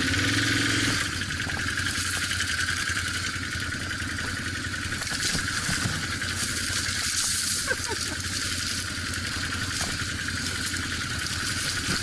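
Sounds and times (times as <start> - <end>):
vehicle engine running at low revs: 0.0 - 12.0.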